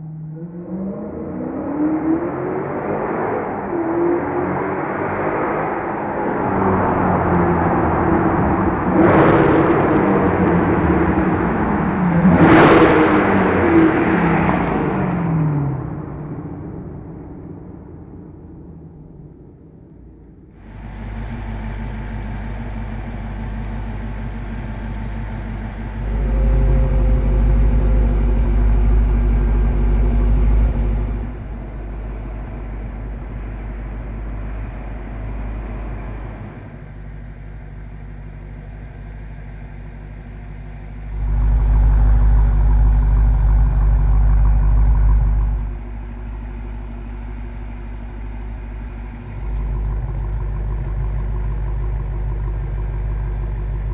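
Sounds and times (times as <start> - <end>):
car engine running: 8.2 - 18.0, 20.6 - 53.9.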